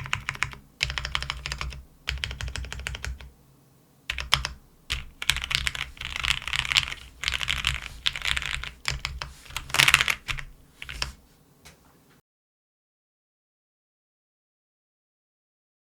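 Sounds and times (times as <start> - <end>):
mechanical keyboard typing: 0.0 - 3.3, 4.1 - 11.2.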